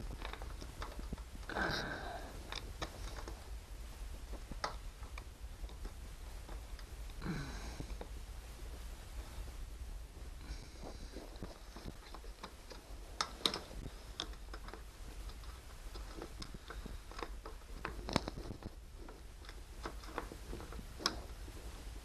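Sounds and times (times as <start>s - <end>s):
plastic parts clicking: 0.0s - 1.5s, 2.4s - 3.4s, 11.3s - 21.4s.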